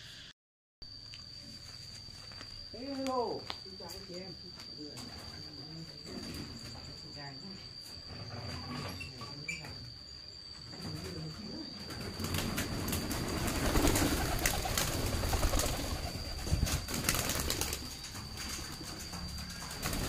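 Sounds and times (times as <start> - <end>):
wings flapping and rustling: 11.9 - 20.0
pigeons cooing: 12.1 - 20.0.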